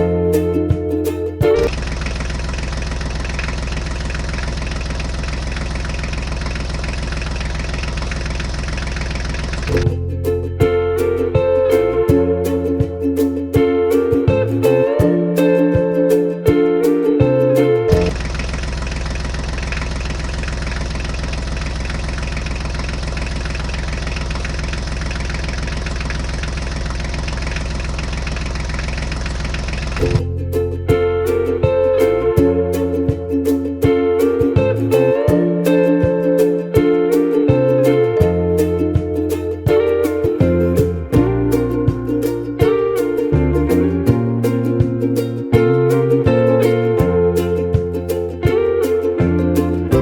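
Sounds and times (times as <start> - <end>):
tractor engine idling: 0.0 - 14.8, 17.8 - 35.1.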